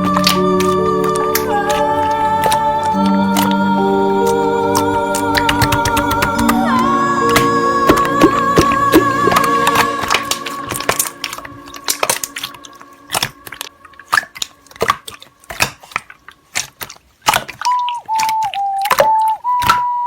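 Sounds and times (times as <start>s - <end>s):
slime squished by hand: 7.3s - 19.0s.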